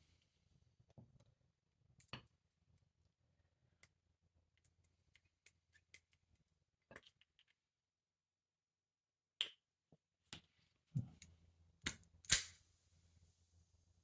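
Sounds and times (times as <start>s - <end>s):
small clicks of padlock parts: 11.9s - 12.6s.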